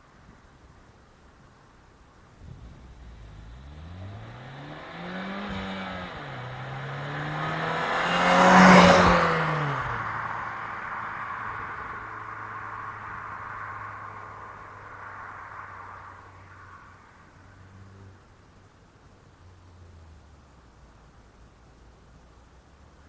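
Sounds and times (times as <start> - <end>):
car engine revving: 2.4 - 18.2.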